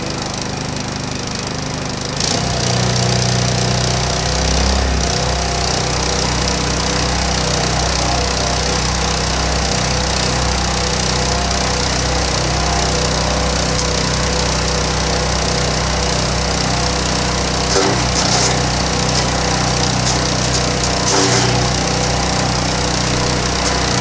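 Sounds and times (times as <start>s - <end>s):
wood chipper engine running: 0.0s - 24.0s
wood crackling as it is chipped: 5.1s - 24.0s.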